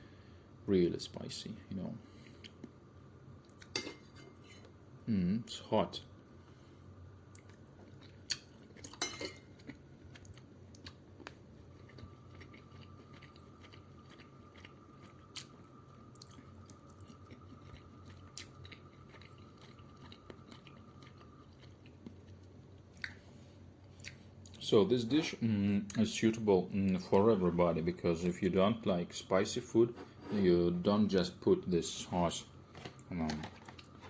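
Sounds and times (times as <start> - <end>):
person chewing food: 3.4 - 3.8, 7.2 - 24.6.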